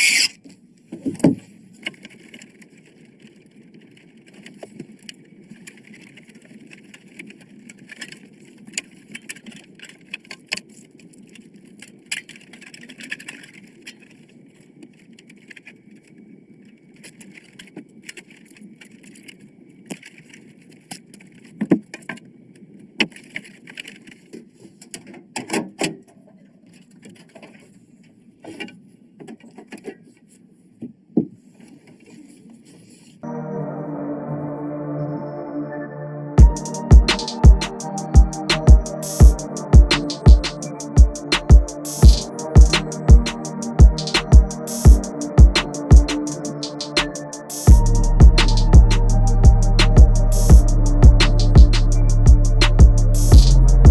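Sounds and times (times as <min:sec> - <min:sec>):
steady low noise: 0:33.2 - 0:53.9.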